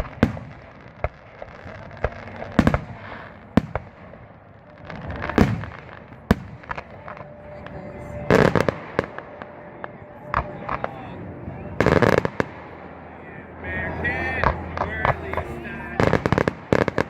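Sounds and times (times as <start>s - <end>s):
crackling firework bangs: 0.0s - 7.3s, 16.0s - 17.0s
fireworks exploding: 0.0s - 13.2s, 13.9s - 17.0s.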